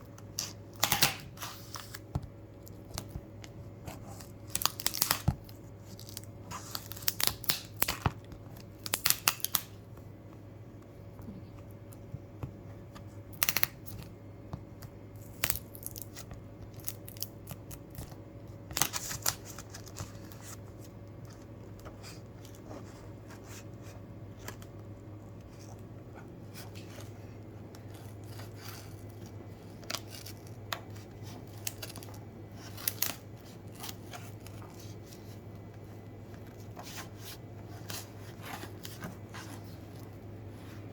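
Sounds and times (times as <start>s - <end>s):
steady low hum: 0.0s - 40.9s
packaging crackling and tearing: 4.1s - 9.8s, 27.8s - 35.1s.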